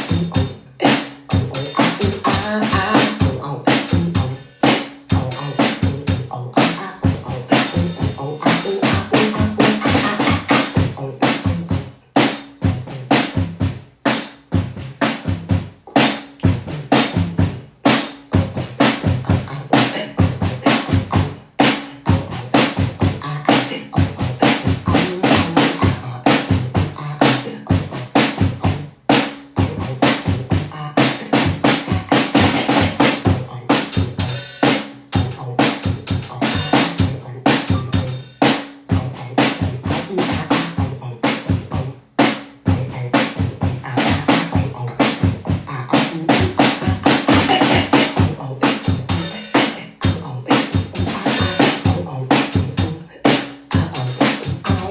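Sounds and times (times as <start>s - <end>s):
fast percussive drum beat: 0.0s - 54.9s.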